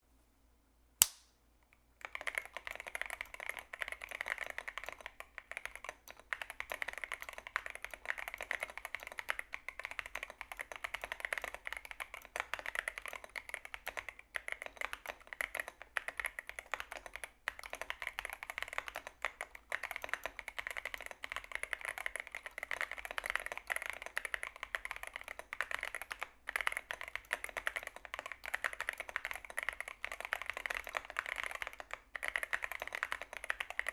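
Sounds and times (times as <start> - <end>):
sharp click: 1.0 - 1.4
fast typing on mechanical keyboard: 2.0 - 33.9.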